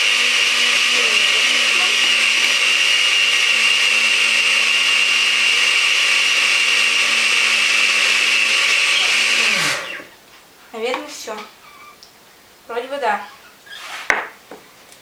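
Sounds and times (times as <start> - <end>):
blender running: 0.0 - 10.2.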